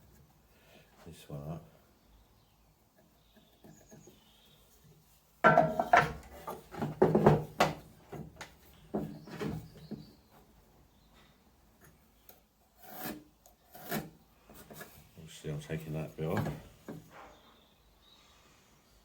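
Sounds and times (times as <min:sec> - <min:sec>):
wooden knocks and clatter: 0:05.4 - 0:10.3, 0:16.2 - 0:17.2.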